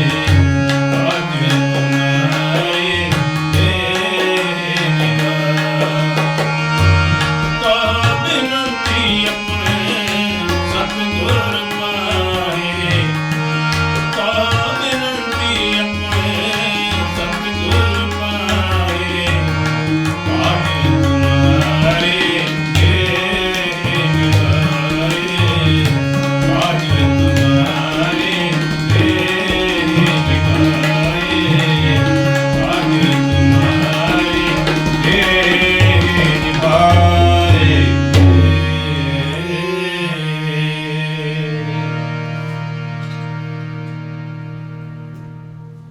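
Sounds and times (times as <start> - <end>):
tabla playing busy rhythm: 0.0 - 40.0.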